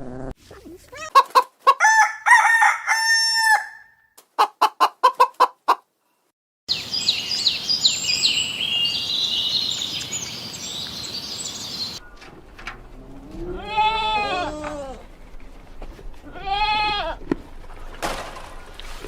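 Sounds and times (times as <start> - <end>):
chicken clucking: 1.0 - 2.0, 4.4 - 5.9
chorus of high falling chirps: 6.7 - 12.0.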